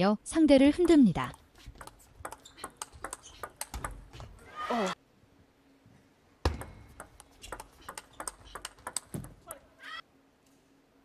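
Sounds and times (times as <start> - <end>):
table tennis ball clicking: 0.8 - 4.1, 6.5 - 9.4.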